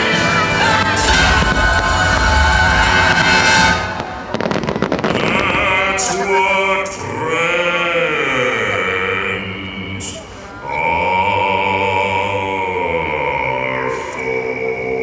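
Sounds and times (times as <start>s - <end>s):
music with singing voice: 0.0s - 4.1s
fireworks crackling: 0.0s - 7.4s.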